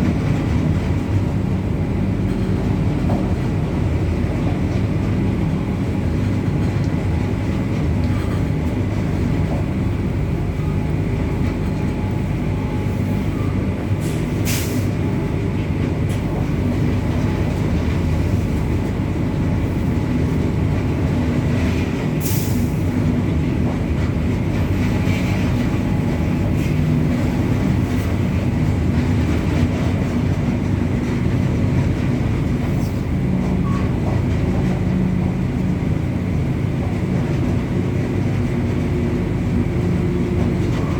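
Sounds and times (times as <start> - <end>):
locomotive rumbling on track: 0.0 - 40.9.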